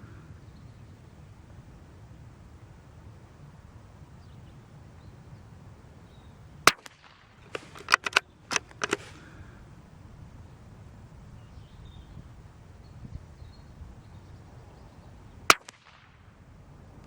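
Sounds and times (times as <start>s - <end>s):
rifle shot: 6.6s - 9.2s, 15.5s - 16.1s
rifle bolt metallic clicks: 6.7s - 9.2s.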